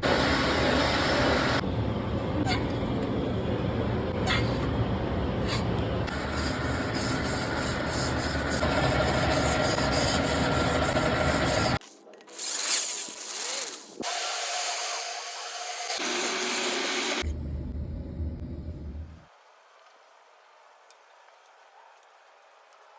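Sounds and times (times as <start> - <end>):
different tool sound: 5.5 - 17.3
sanding strokes on metal: 6.1 - 17.2.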